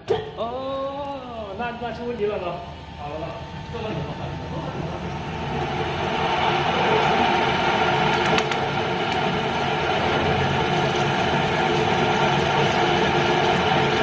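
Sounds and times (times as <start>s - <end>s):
drilling machine drilling steel: 4.8s - 14.0s.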